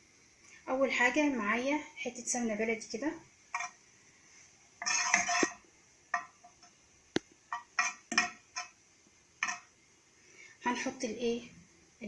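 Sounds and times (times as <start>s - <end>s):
metal spoon scraping a cooking pot: 3.5s - 3.8s, 4.8s - 5.6s, 7.5s - 8.8s, 9.4s - 9.7s.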